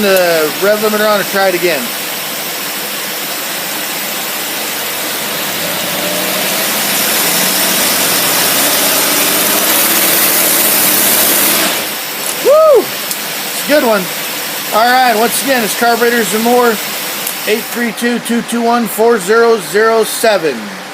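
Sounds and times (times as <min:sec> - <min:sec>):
steady rushing hiss: 0:00.0 - 0:20.9
boat engine revving: 0:02.1 - 0:12.2.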